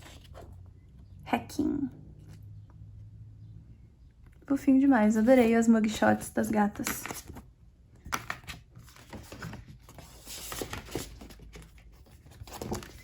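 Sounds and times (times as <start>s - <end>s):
paper rustling: 8.1s - 13.0s.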